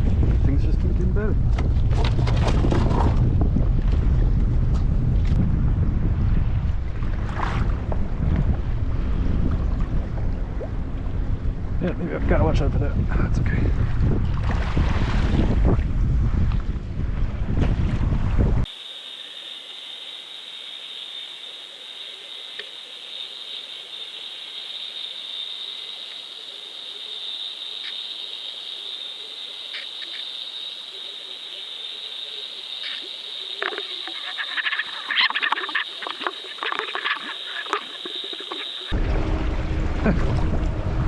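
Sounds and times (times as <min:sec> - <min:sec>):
wind buffeting microphone: 0:00.0 - 0:18.7
faint hiss: 0:18.7 - 0:38.9
steady high-pitched whine: 0:18.7 - 0:39.5.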